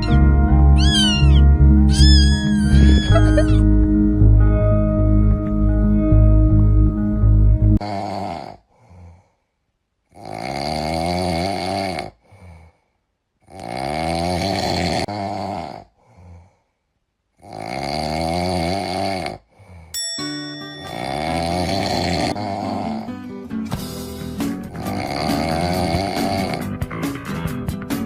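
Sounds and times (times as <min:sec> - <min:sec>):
music: 0:00.0 - 0:07.8, 0:20.2 - 0:28.0
loud rasping snoring: 0:07.8 - 0:09.2, 0:10.1 - 0:12.8, 0:13.4 - 0:16.6, 0:17.4 - 0:19.9, 0:21.0 - 0:23.2, 0:24.6 - 0:26.8.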